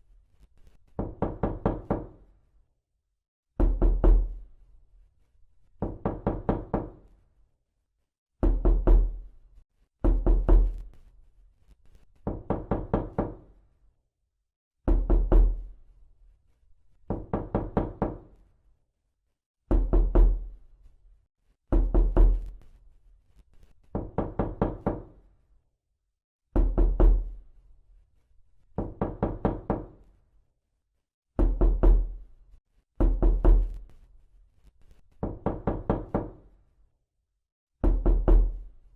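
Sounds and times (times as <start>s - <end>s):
knocking on a door: 1.0s - 2.2s, 3.6s - 4.4s, 5.8s - 7.0s, 8.4s - 9.2s, 10.0s - 10.8s, 12.2s - 13.5s, 14.8s - 15.7s, 17.1s - 18.3s, 19.7s - 20.5s, 21.7s - 22.5s, 23.9s - 25.2s, 26.5s - 27.4s, 28.8s - 30.0s, 31.4s - 32.2s, 33.0s - 33.8s, 35.2s - 36.5s, 37.8s - 38.6s.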